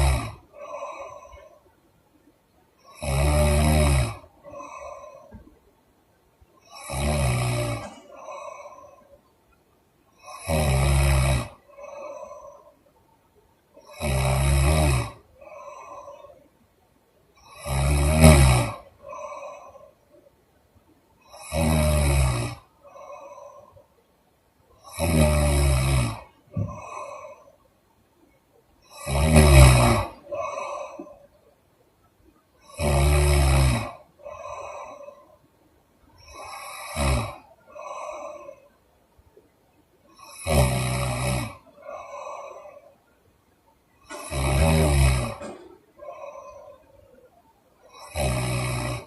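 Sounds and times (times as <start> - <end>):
woman snoring loudly: 0.0 - 1.6, 2.8 - 5.4, 6.6 - 9.0, 10.2 - 12.8, 13.8 - 16.3, 17.4 - 19.9, 21.3 - 23.7, 24.8 - 27.5, 28.9 - 31.2, 32.6 - 35.3, 36.2 - 38.7, 40.2 - 42.8, 44.1 - 46.8, 47.9 - 49.0.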